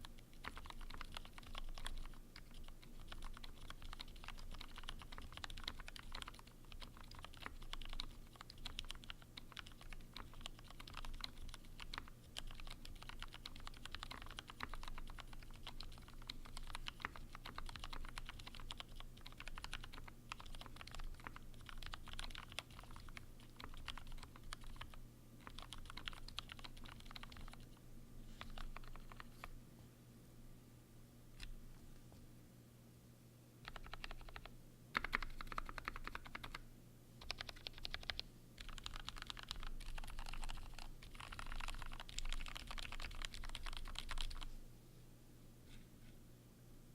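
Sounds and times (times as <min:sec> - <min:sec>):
mechanical keyboard typing: 0:00.0 - 0:27.7, 0:28.4 - 0:29.5, 0:33.6 - 0:36.6, 0:37.2 - 0:44.5.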